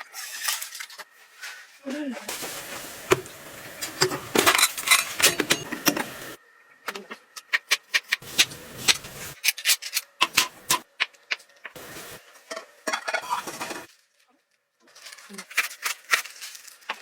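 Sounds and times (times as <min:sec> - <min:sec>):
cookware and utensils clinking: 0:02.3 - 0:06.4, 0:08.0 - 0:10.8, 0:11.7 - 0:13.9.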